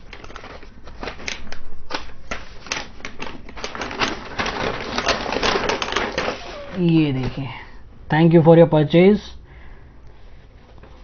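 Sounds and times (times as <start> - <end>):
paper packaging rustling: 0.0 - 7.5.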